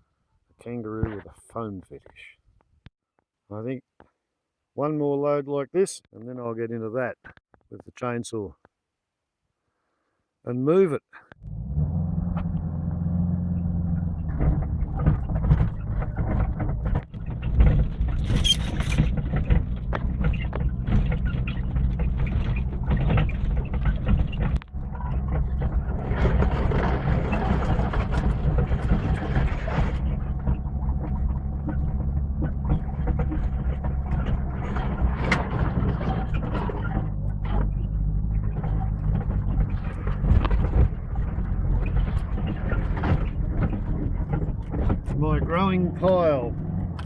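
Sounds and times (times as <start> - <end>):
vehicle engine running: 11.4 - 47.0
rattling and clatter: 13.5 - 47.0.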